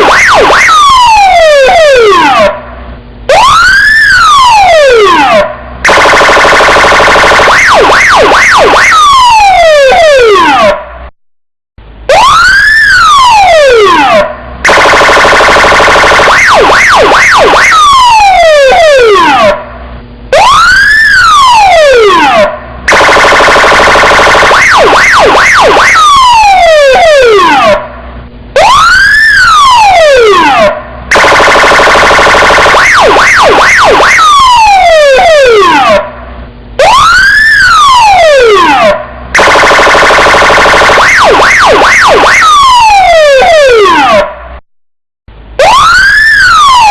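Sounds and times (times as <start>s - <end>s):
police car siren: 0.0s - 11.0s, 12.1s - 44.6s, 45.4s - 46.9s.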